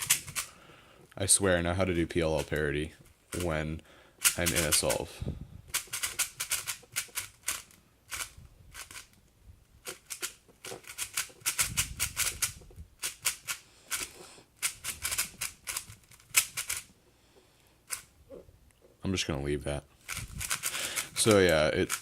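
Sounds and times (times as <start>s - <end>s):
speed cube clicking: 0.0s - 0.5s, 4.2s - 5.0s, 5.7s - 9.2s, 9.8s - 16.9s, 17.9s - 18.1s, 20.1s - 22.0s.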